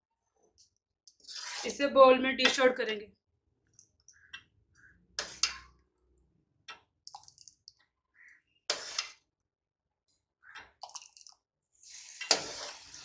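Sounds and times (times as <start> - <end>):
spoon knocking and scraping a pot: 5.2 - 5.8, 12.0 - 13.0.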